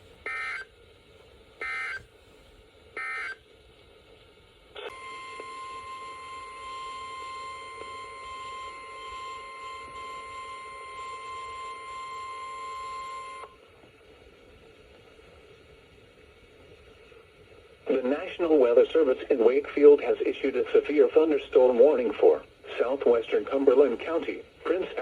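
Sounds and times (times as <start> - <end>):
steady warning alarm tone: 0.3 - 0.7, 1.6 - 2.0, 3.0 - 3.4, 4.9 - 13.6.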